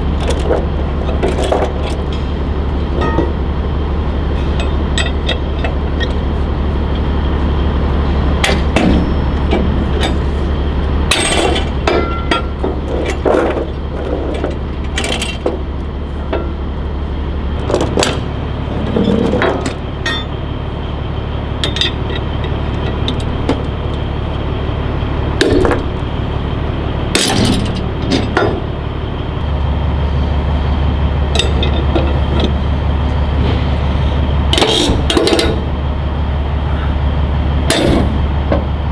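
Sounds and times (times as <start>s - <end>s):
steel chains clanking: 0.0s - 10.5s, 11.1s - 15.7s, 17.6s - 20.4s, 21.6s - 24.2s, 25.4s - 26.1s, 27.1s - 28.4s, 31.3s - 32.7s, 34.5s - 35.7s
engine idling: 0.0s - 38.9s.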